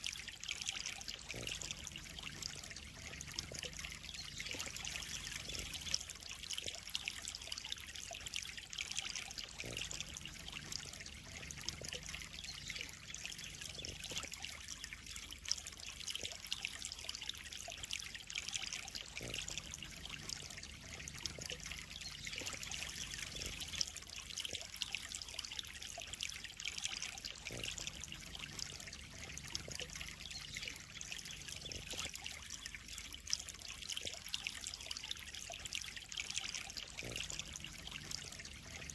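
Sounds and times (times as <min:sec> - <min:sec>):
faint ticks: 0:00.0 - 0:38.9
water trickling in a pond: 0:00.0 - 0:38.9.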